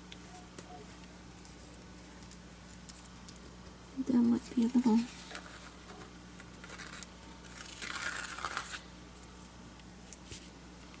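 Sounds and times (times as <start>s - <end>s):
papery rustle of tape: 4.5s - 9.4s.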